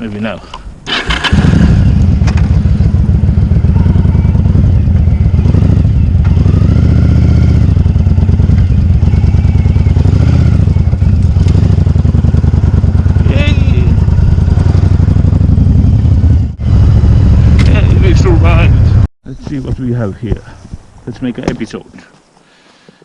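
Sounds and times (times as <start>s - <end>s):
motorcycle engine idling: 1.1s - 19.1s.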